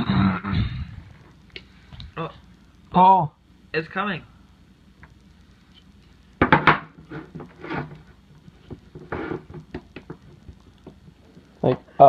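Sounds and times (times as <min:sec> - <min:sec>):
wooden puzzle knocking and scraping: 0:06.4 - 0:11.0.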